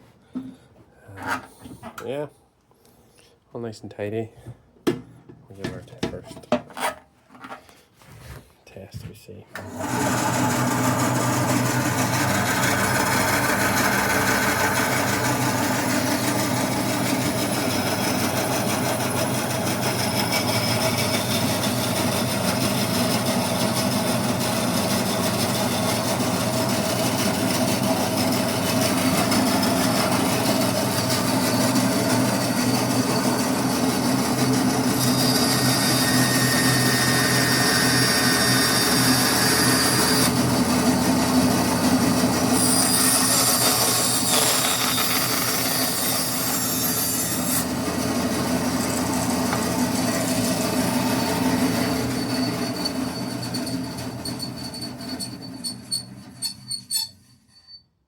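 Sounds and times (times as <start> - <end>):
bandsaw running: 9.6 - 56.2.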